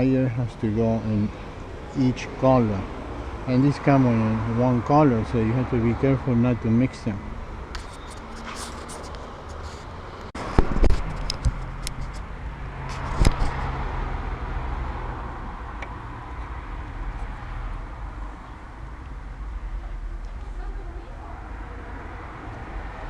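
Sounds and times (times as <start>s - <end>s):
sharp clicks and knocks: 10.2s - 12.3s.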